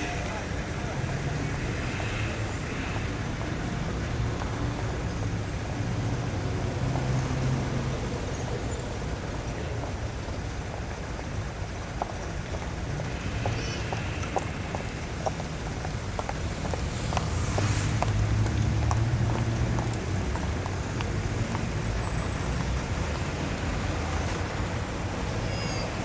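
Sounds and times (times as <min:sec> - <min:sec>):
rumble of passing traffic: 0:00.0 - 0:26.0.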